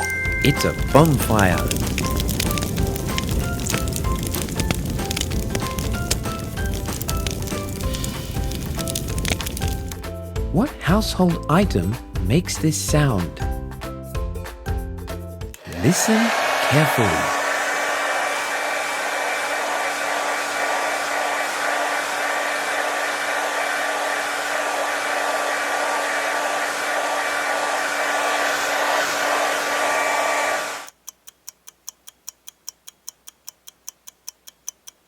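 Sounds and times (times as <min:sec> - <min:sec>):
hair dryer blowing: 0:15.6 - 0:30.9
timer ticking: 0:30.9 - 0:35.0.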